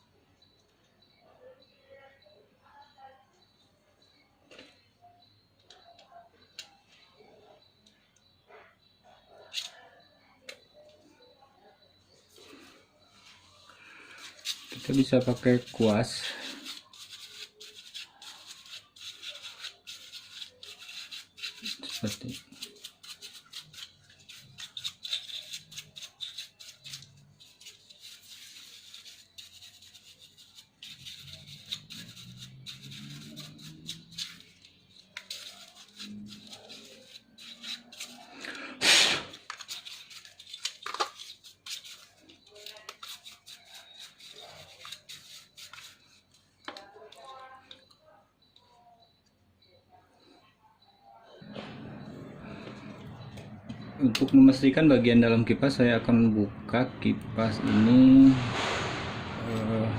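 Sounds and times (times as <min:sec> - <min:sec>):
brush scrubbing a fan: 0:13.4 - 0:47.9.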